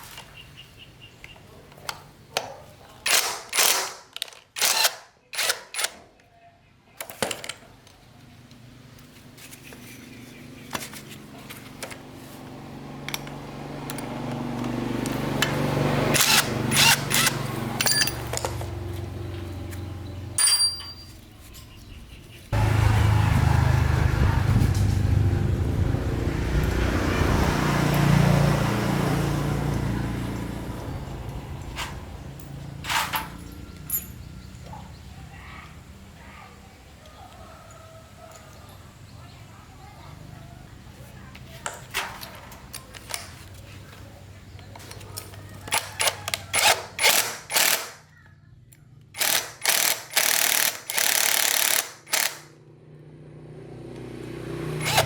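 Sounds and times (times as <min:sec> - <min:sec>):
power tool running: 0:13.4 - 0:18.7, 0:22.6 - 0:25.0, 0:45.7 - 0:47.9, 0:49.2 - 0:52.5, 0:54.8 - 0:55.0.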